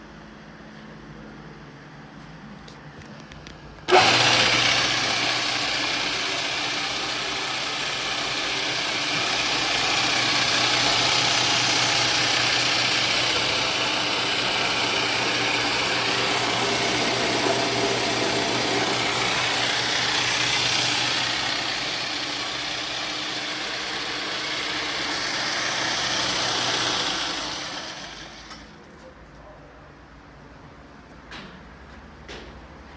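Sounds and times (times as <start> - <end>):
drill press motor hum: 2.9 - 28.8.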